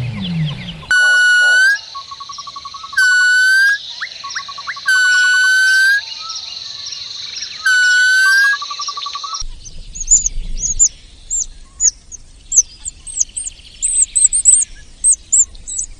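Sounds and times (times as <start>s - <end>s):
high-pitched buzz: 0.0s - 1.8s
bird whistled call: 0.0s - 6.5s, 7.4s - 15.9s
bird rattling trill: 7.6s - 9.4s, 10.0s - 15.9s.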